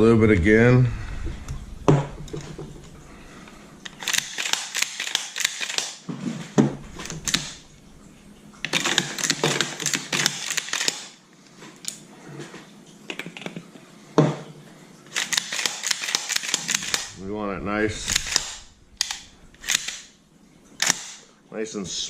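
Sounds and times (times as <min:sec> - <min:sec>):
metal gun parts clicking: 0:03.8 - 0:06.0, 0:06.9 - 0:07.6, 0:08.6 - 0:11.2, 0:15.1 - 0:17.2, 0:18.0 - 0:20.1, 0:20.8 - 0:21.3.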